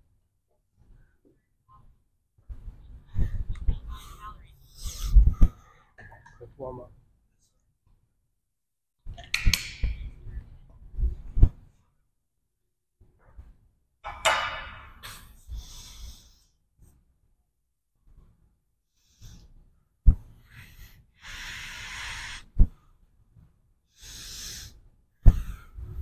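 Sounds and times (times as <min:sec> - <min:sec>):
person breathing out hard: 0:20.5 - 0:22.5.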